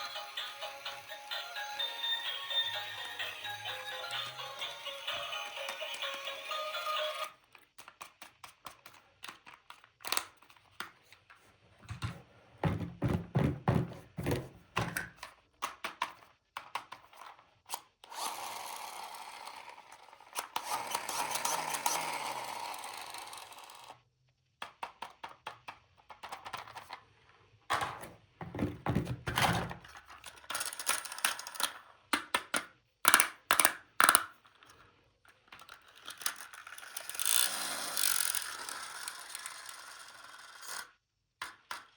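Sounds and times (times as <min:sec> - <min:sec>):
toy clicks taps and knocks: 0:30.3 - 0:34.4, 0:41.4 - 0:41.9.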